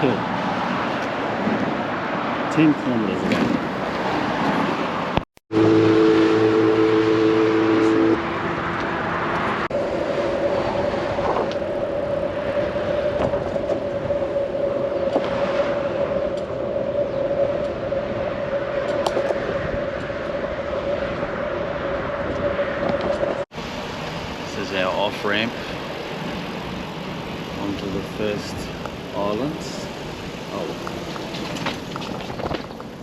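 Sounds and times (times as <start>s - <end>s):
wind: 0.0s - 33.0s
two-note horn: 5.5s - 8.8s
thin whistle-like tone: 5.6s - 8.2s
bicycle rolling noise: 8.7s - 24.6s, 25.6s - 33.0s.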